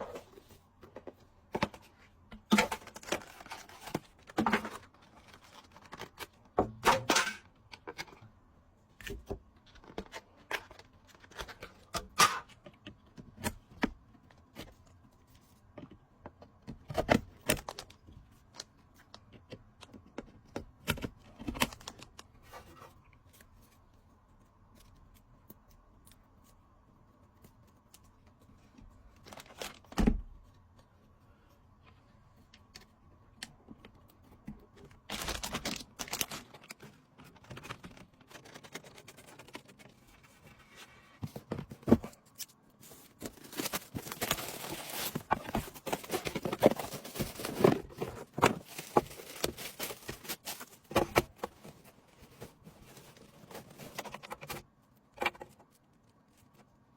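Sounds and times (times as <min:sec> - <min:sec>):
plastic crinkling and rustling: 0:27.6 - 0:30.0, 0:34.7 - 0:54.8.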